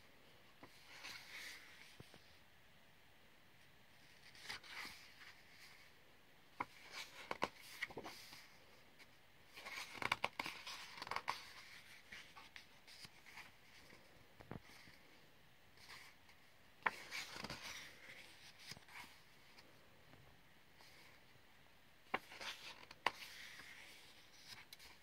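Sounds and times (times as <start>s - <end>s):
paper pages rustling: 0.6s - 2.3s, 4.1s - 5.9s, 6.6s - 8.6s, 9.5s - 15.1s, 15.8s - 19.7s, 22.1s - 25.0s.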